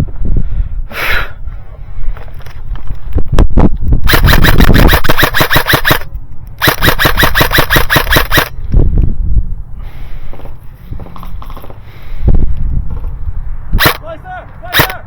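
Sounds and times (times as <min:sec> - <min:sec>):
airsoft gun firing bursts: 0:04.1 - 0:08.5, 0:13.8 - 0:14.0, 0:14.7 - 0:15.0.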